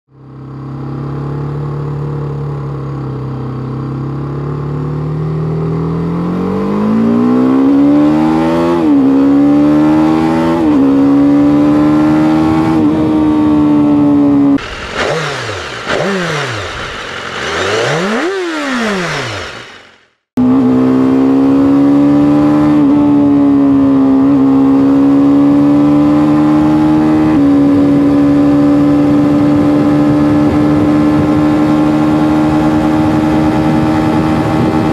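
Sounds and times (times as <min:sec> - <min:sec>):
motorcycle engine accelerating: 0:00.1 - 0:34.9
engine throttle blips: 0:14.3 - 0:20.8.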